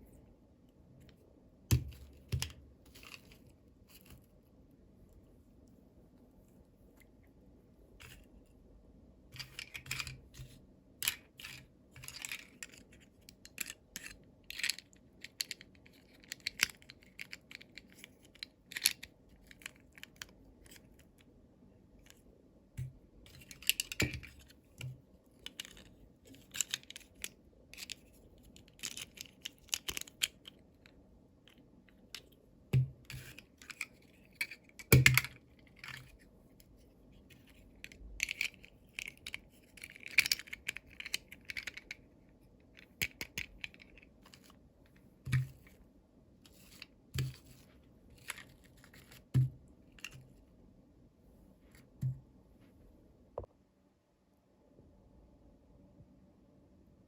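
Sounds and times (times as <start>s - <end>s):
toy packaging rustling: 25.4s - 30.6s, 37.4s - 42.0s, 46.5s - 49.4s.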